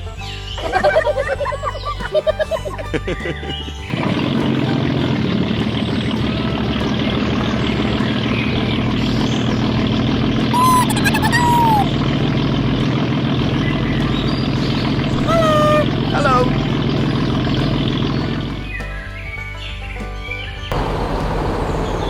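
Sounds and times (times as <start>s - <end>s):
small engine running: 0.6s - 22.0s
high whistle-like calls: 10.5s - 12.1s, 15.1s - 16.7s.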